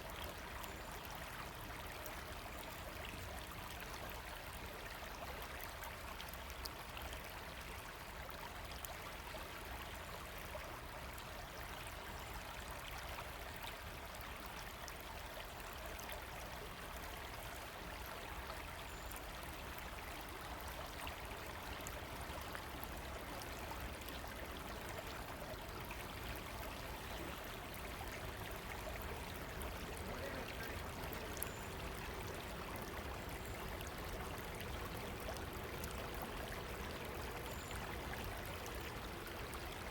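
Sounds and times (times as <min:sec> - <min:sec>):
river water rushing: 0:21.9 - 0:39.9.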